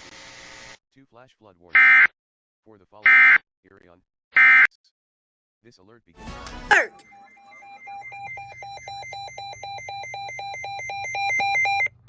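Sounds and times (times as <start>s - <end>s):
electronic alarm beeping rapidly: 1.8s - 2.1s, 3.0s - 3.4s, 4.4s - 4.7s, 6.9s - 12.0s.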